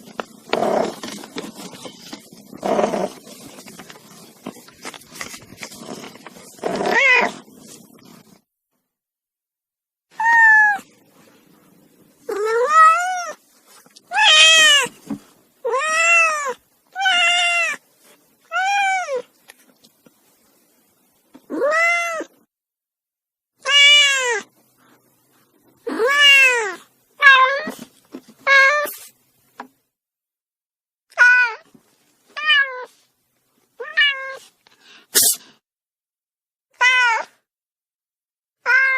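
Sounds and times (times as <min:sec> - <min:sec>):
cat meowing: 0:06.6 - 0:07.4, 0:10.1 - 0:10.9, 0:12.3 - 0:13.4, 0:14.1 - 0:14.9, 0:15.6 - 0:17.8, 0:18.5 - 0:19.3, 0:21.5 - 0:22.4, 0:23.6 - 0:24.5, 0:25.9 - 0:27.8, 0:31.1 - 0:31.7, 0:33.8 - 0:34.4, 0:36.8 - 0:37.4, 0:38.6 - 0:38.9.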